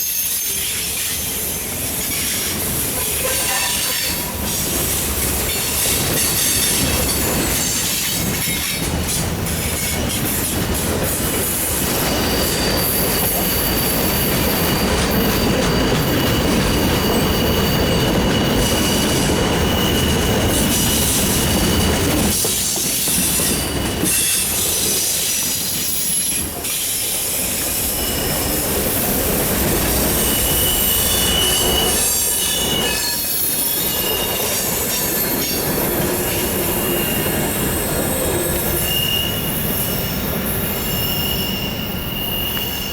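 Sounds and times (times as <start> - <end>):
freight train wheels rumbling: 0.0 - 42.9
high-pitched wheel squeal: 11.8 - 22.4, 29.7 - 42.9.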